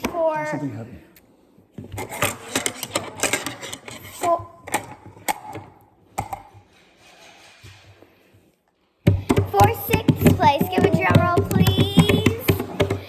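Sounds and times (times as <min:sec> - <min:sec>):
hard objects clattering: 0:01.8 - 0:08.2, 0:09.0 - 0:13.0
hard objects knocking: 0:09.0 - 0:13.0.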